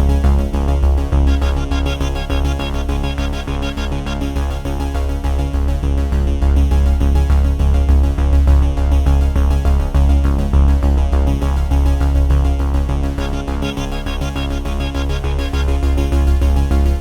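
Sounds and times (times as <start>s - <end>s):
electronic music with heavy bass: 0.0s - 17.0s.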